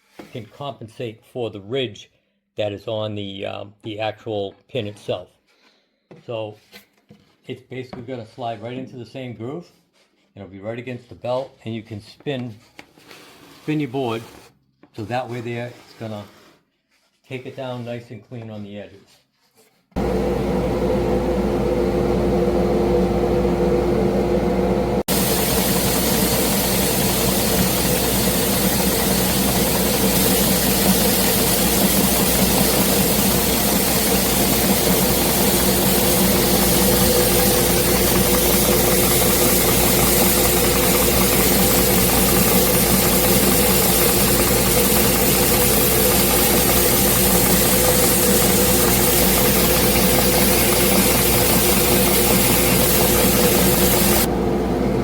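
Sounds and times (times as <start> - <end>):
belt sander motor hum: 20.0 - 55.0
wooden board hissing against sanding belt: 25.1 - 54.3.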